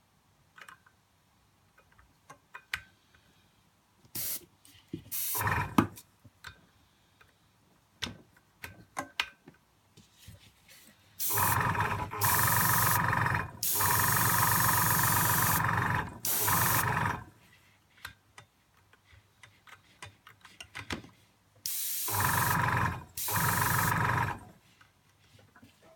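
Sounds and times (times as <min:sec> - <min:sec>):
air hissing: 0:04.2 - 0:04.4, 0:05.1 - 0:05.8, 0:11.2 - 0:17.3, 0:21.7 - 0:24.4
airbrush compressor running: 0:05.2 - 0:05.9, 0:11.2 - 0:17.3, 0:21.7 - 0:24.5.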